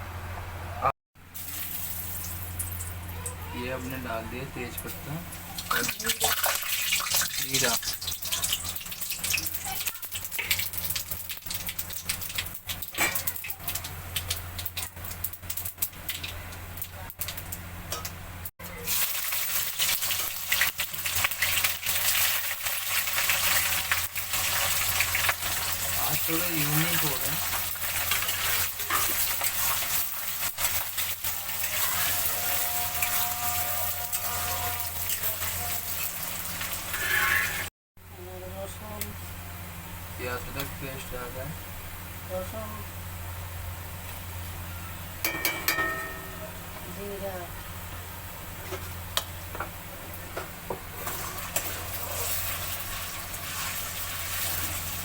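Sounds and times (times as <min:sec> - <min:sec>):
food sizzling in hot oil: 0:01.2 - 0:03.5, 0:04.7 - 0:37.7, 0:50.6 - 0:55.0
low hum: 0:41.5 - 0:48.6.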